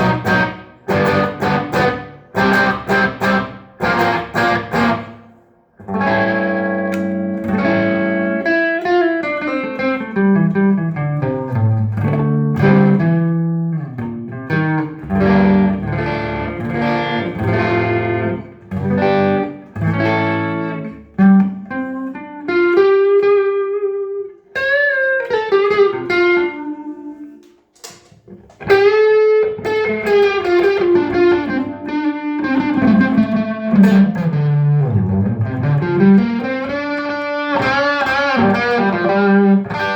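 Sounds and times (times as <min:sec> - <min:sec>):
electric guitar notes and chords: 0:00.0 - 0:39.9.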